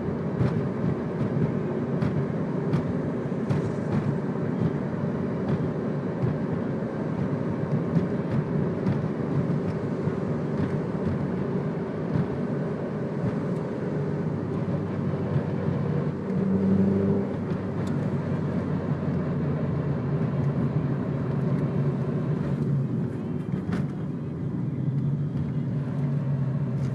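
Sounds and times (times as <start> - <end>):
car engine and road noise: 0.0 - 26.9.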